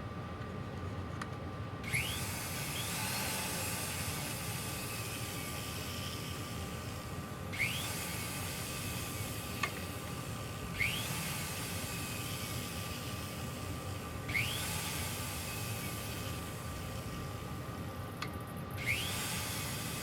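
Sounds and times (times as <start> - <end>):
polishing wheel motor running: 1.8 - 17.8, 18.8 - 20.0.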